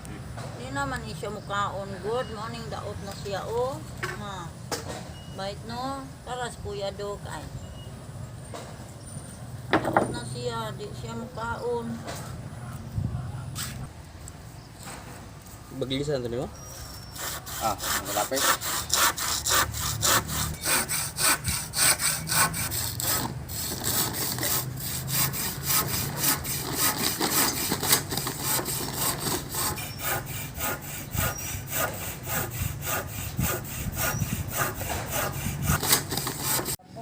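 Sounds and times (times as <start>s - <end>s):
hand saw cutting wood: 17.1s - 36.8s.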